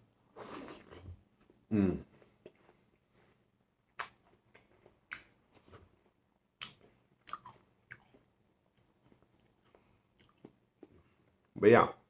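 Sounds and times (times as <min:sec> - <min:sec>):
person chewing watermelon: 0:06.6 - 0:11.5.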